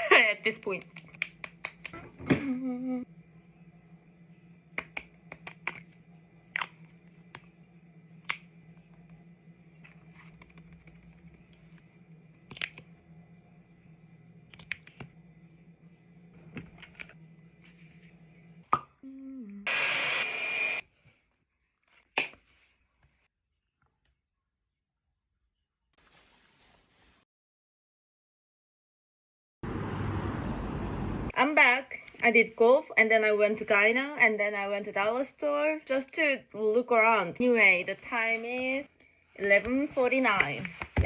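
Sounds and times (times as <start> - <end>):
steady low hum: 29.6 - 31.3.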